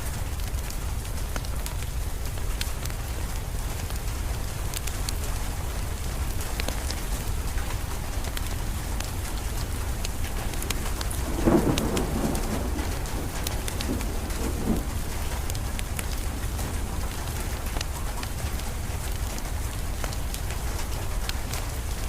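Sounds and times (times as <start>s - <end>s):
steady rain: 0.0s - 22.0s
wood fire crackling: 0.0s - 22.0s
thunder rolling: 9.8s - 19.1s.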